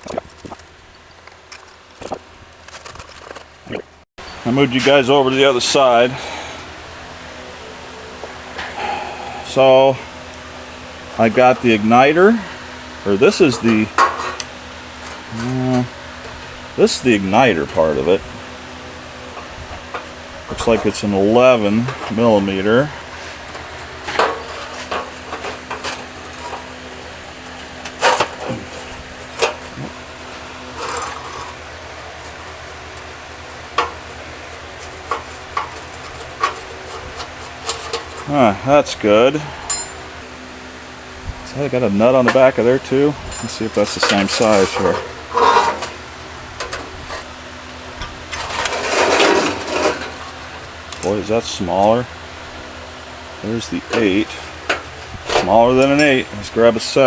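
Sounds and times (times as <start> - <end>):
metal hand tools clinking: 39.7 - 40.2, 43.2 - 45.9
hand tools clinking on metal: 39.7 - 40.3, 43.2 - 47.2, 53.6 - 57.0.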